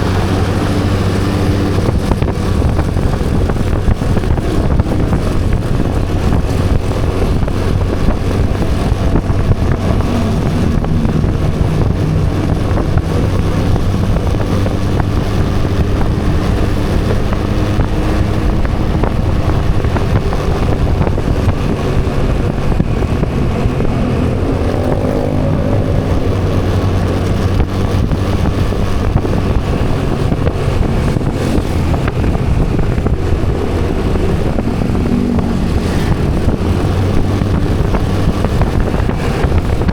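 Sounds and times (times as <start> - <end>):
road traffic noise: 0.0 - 39.9
vehicle engine: 0.0 - 39.9.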